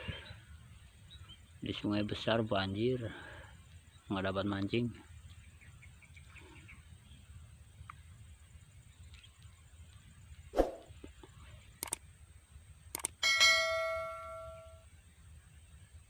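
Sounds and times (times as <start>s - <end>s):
sharp clicks: 11.8s - 12.0s, 12.9s - 13.2s
bell-like metallic ring: 13.2s - 14.8s.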